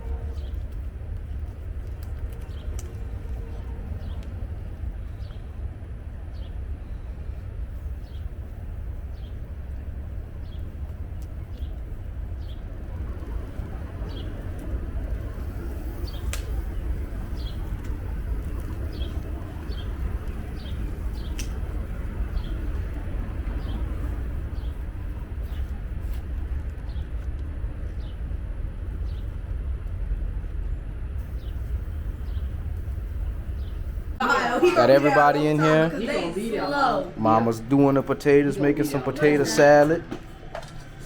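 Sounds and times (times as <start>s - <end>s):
low rumble: 0.0s - 34.2s.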